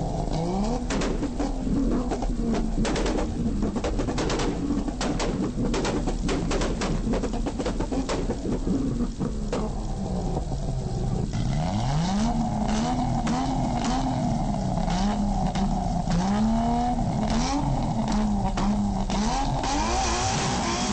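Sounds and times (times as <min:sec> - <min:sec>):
scattered clicks: 0:00.0 - 0:20.6
steady hiss: 0:00.0 - 0:20.9
radio engine-like revving sound: 0:11.2 - 0:20.9.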